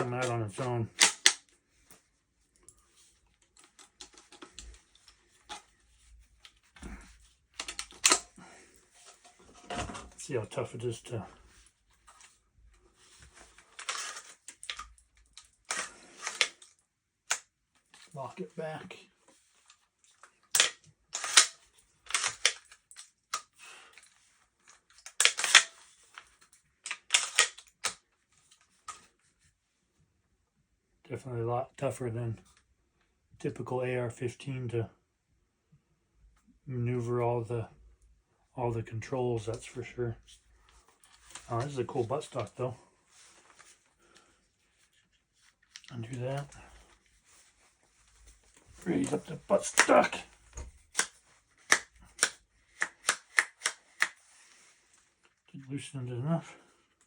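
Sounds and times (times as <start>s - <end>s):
shotgun being handled clicks: 1.0s - 1.5s, 7.6s - 8.3s, 15.7s - 16.7s, 20.5s - 23.5s, 25.0s - 25.8s, 26.8s - 28.0s, 49.0s - 54.2s.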